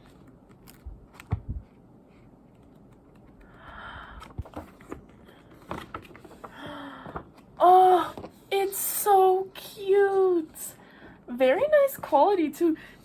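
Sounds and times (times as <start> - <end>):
paper or plastic rustle: 4.3 - 7.4.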